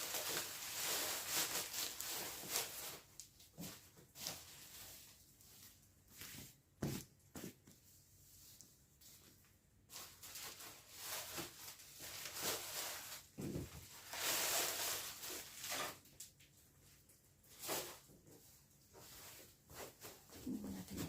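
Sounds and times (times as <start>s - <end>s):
packaging rustling: 0.0s - 4.8s, 9.9s - 16.0s.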